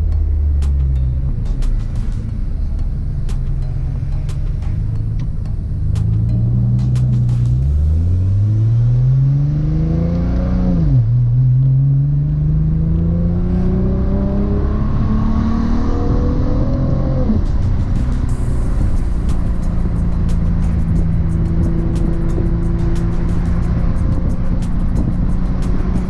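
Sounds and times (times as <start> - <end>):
car engine accelerating hard: 0.0 - 26.0.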